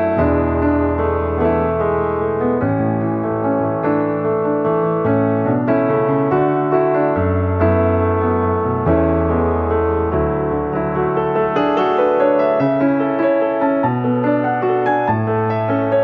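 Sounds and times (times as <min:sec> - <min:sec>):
gentle piano music: 0:00.0 - 0:16.0.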